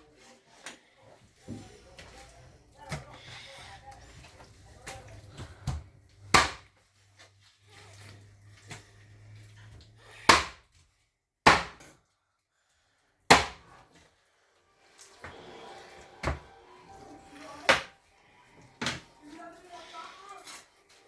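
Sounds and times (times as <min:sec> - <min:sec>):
knife chopping on wooden board: 0:06.3 - 0:06.7, 0:10.3 - 0:10.6, 0:11.5 - 0:11.9, 0:13.3 - 0:13.7, 0:17.7 - 0:17.9.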